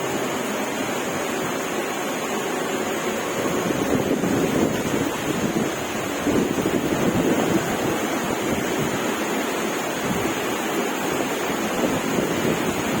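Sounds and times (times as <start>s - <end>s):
heavy rain pouring: 0.0s - 13.0s
wind buffeting microphone: 3.3s - 13.0s.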